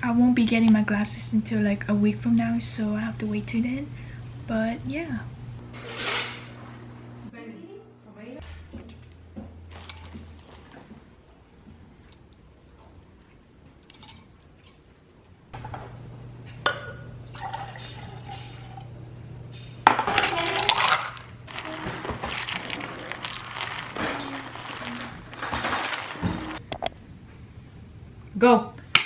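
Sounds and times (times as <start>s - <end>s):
steady low hum: 0.0s - 19.8s
glass and dishes clinking: 16.6s - 18.9s
liquid pouring into a glass: 17.2s - 18.9s.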